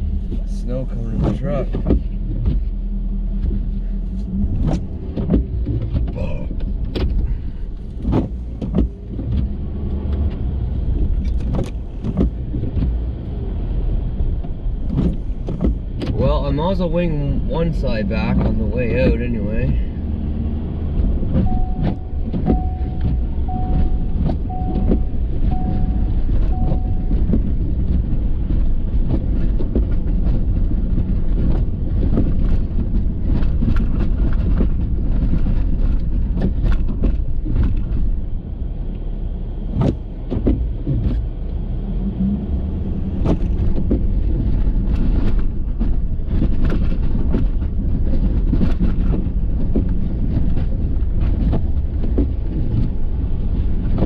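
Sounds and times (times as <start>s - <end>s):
truck driving with rumble: 0.0s - 54.0s
plow knocks and rattles: 20.9s - 38.4s, 43.0s - 54.0s
short beeps: 21.4s - 27.2s.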